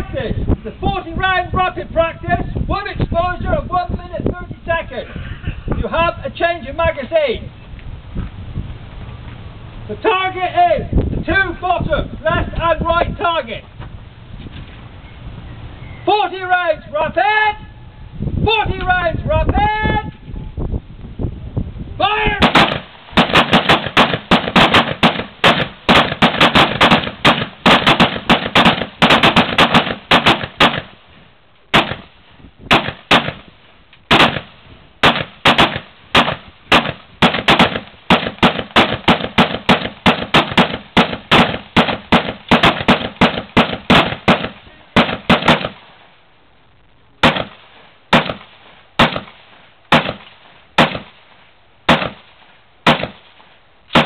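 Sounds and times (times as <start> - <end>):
rifles firing: 22.4 - 31.0, 31.7 - 32.1, 32.7 - 33.5, 34.1 - 45.9, 47.2 - 51.2, 51.9 - 52.3, 52.9 - 53.3.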